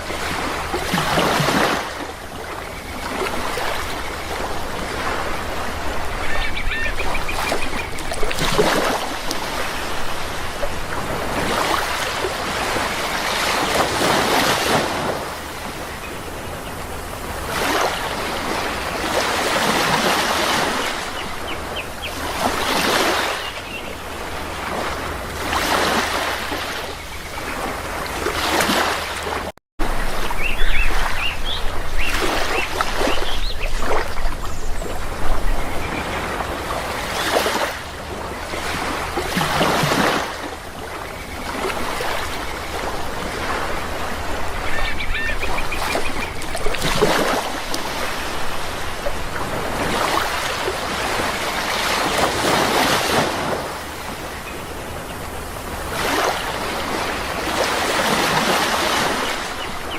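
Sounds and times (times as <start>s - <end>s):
sea waves washing in: 0.0s - 59.9s
short bird calls: 6.2s - 8.0s, 44.6s - 46.4s.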